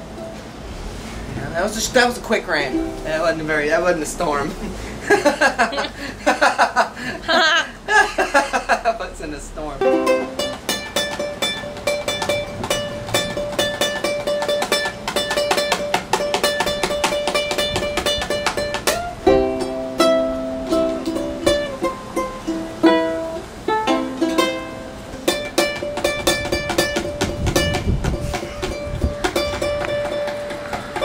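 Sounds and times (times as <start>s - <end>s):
ukulele rapid picking: 1.6s - 4.4s, 9.8s - 31.0s
ukulele ringing chords: 2.6s - 4.0s, 9.8s - 31.0s.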